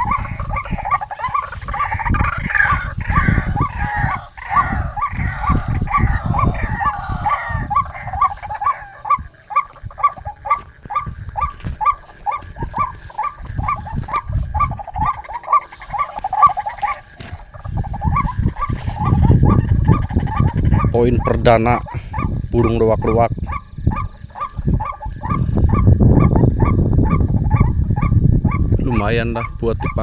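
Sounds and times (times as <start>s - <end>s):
waterhen calling: 0.0s - 28.6s.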